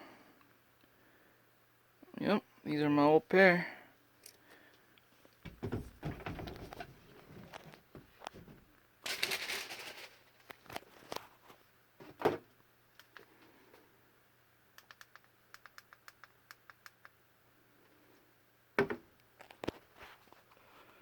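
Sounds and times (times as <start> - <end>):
soft handling knocks: 5.4 - 8.7.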